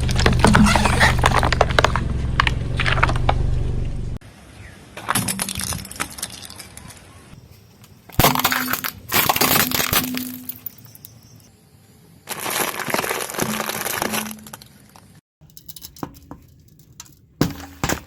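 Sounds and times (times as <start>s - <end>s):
brittle objects crunching under tyre: 0.0s - 3.4s, 5.0s - 11.4s, 12.2s - 15.2s
low engine hum with crackling: 0.0s - 4.8s.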